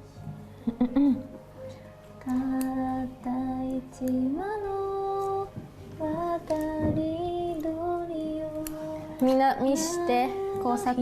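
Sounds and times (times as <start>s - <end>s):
woman singing slow melody: 2.2s - 11.0s.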